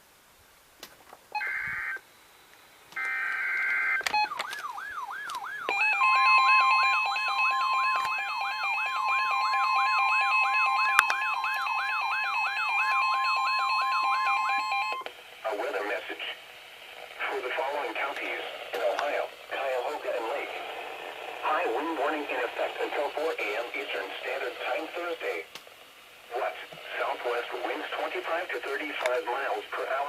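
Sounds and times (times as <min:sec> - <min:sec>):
steady layered alert tones: 0:01.4 - 0:02.0, 0:03.0 - 0:15.0.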